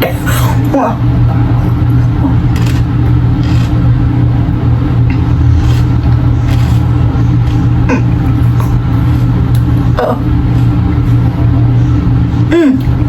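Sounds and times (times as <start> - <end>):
steady low hum: 0.0 - 13.0
potato chips being chewed: 2.5 - 3.8, 5.1 - 9.7.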